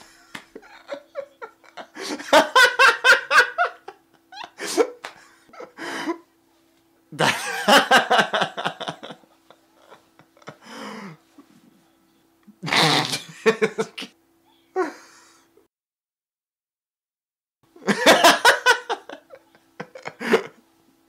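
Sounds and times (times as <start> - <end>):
laughter in rapid pulses: 0.0 - 6.2, 7.1 - 10.7, 12.6 - 14.2, 17.8 - 20.6.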